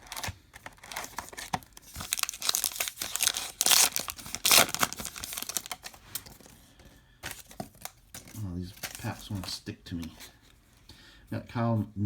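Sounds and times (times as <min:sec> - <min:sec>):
wrapper tearing and crinkling: 0:00.0 - 0:06.5, 0:07.3 - 0:09.6.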